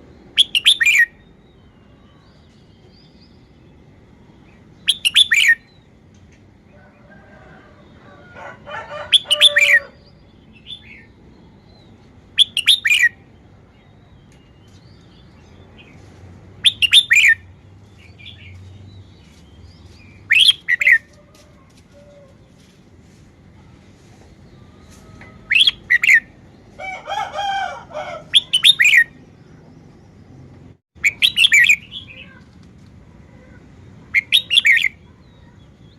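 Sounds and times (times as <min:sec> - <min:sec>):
bird whistled song: 0:00.2 - 0:03.2, 0:04.8 - 0:05.8, 0:12.4 - 0:13.2, 0:16.6 - 0:17.5, 0:19.3 - 0:21.1, 0:24.8 - 0:26.4, 0:28.3 - 0:29.2, 0:31.0 - 0:32.2, 0:34.1 - 0:35.0.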